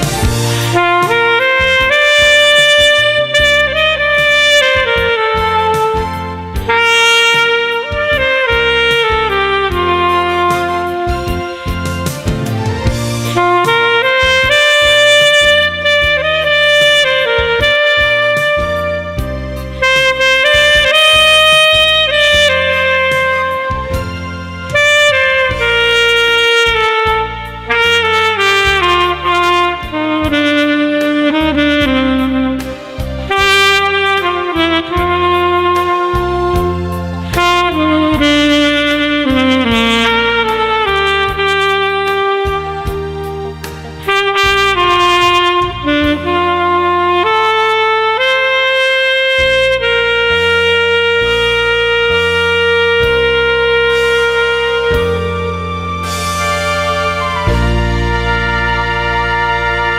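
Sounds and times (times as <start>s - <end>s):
bass accompaniment: 0.0s - 59.9s
instrumental backing track: 0.0s - 59.9s
saxophone melody: 0.0s - 59.9s.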